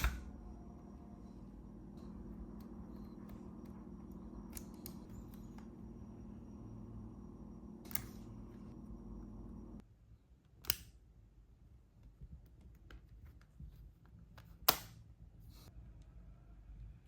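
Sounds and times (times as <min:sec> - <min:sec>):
low steady hum: 0:00.0 - 0:13.2.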